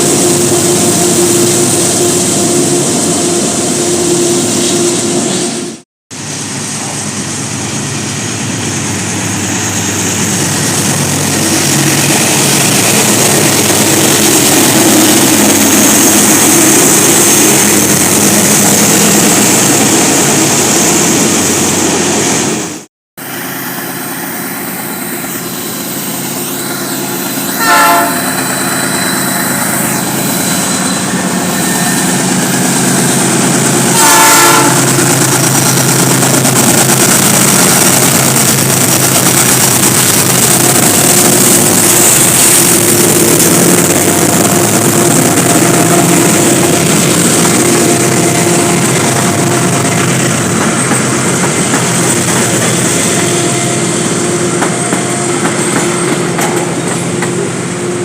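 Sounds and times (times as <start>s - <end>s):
train rumbling on rails: 0.0s - 58.0s
train horn blasts: 26.9s - 32.0s, 33.9s - 35.1s.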